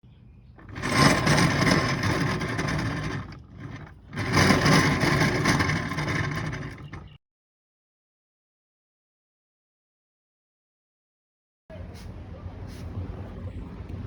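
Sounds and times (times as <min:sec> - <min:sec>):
rough mechanical gearbox noise: 0:00.6 - 0:07.2
scooter engine revving: 0:00.6 - 0:07.2.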